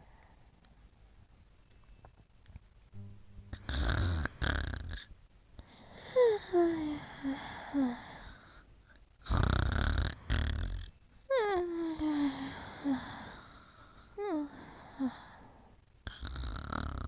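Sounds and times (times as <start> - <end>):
pet snoring: 3.5 - 5.1, 9.2 - 11.0, 16.0 - 17.0.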